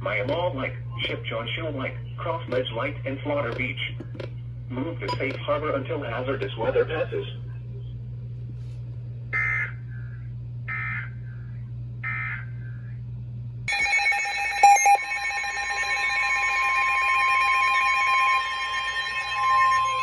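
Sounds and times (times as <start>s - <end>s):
electronic alarm tones: 13.7s - 20.0s
screeching digital data bursts: 13.7s - 20.0s
steady alert tone: 13.7s - 20.0s.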